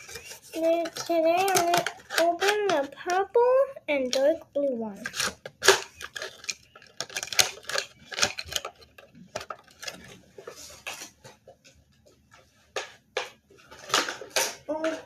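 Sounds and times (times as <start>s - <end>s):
plastic parts clicking: 0.0s - 3.0s, 5.0s - 10.2s, 13.2s - 15.0s.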